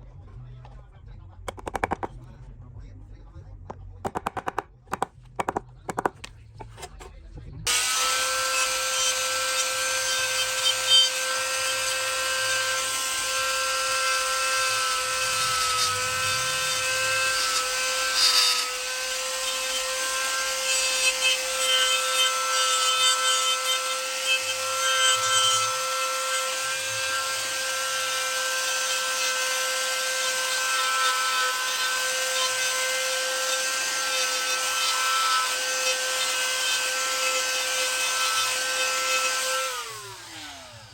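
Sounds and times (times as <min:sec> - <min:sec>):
sharp taps: 0:01.5 - 0:02.2, 0:04.1 - 0:07.0
power tool motor whine: 0:07.7 - 0:40.9.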